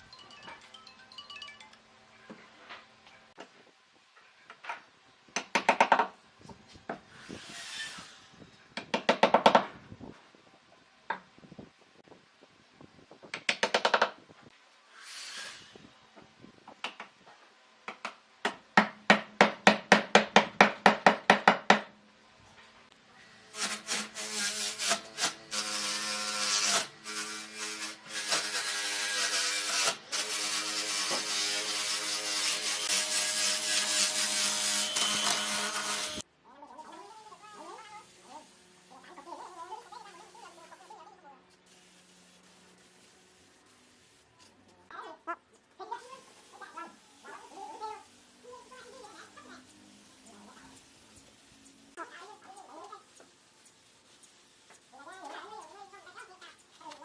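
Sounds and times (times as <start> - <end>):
sawing wood: 7.1 - 8.2, 23.5 - 36.2
power tool running: 23.6 - 36.2.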